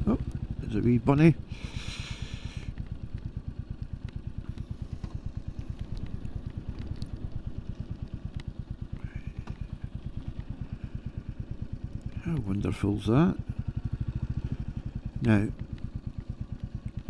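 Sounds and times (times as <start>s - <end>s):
motorcycle engine thumping: 2.5s - 12.5s.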